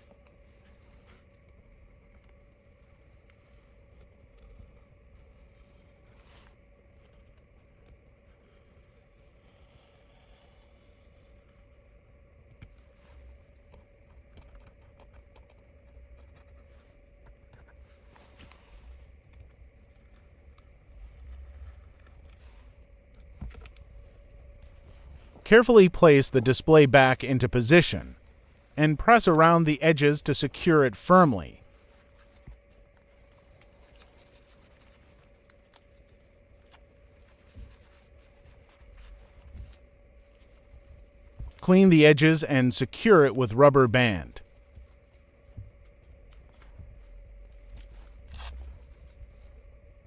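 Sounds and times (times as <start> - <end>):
faint steady hum: 15.8 - 50.0.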